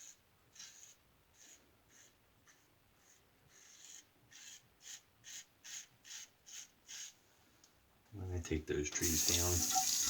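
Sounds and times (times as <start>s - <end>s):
scratchy rubbing strokes: 0.0s - 7.2s.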